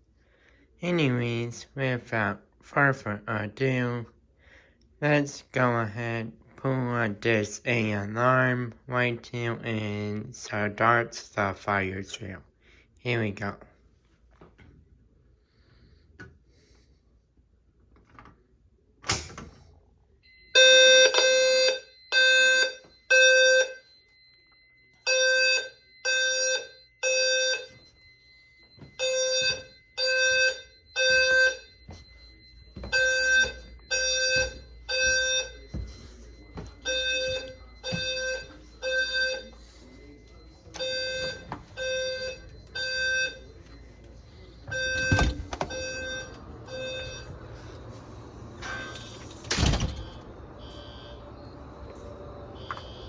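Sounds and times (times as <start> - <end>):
fire alarm buzzy pulses: 20.0 - 53.0.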